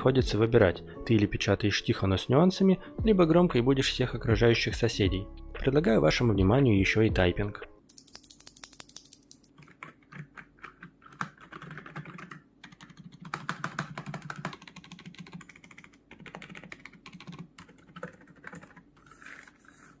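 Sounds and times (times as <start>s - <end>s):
soft keyboard keystrokes: 8.0s - 18.8s.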